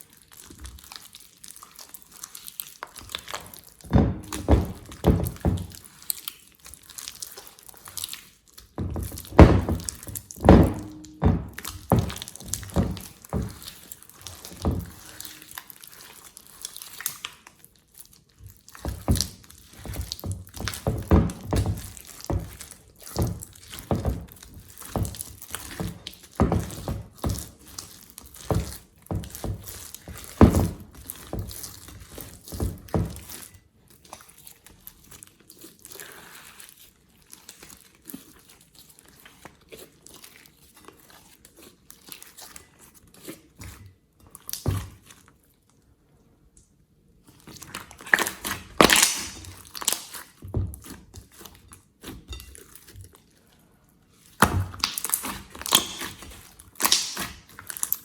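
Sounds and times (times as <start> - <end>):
slime crackling and popping: 0.1 - 38.6, 47.4 - 51.4, 54.3 - 58.0.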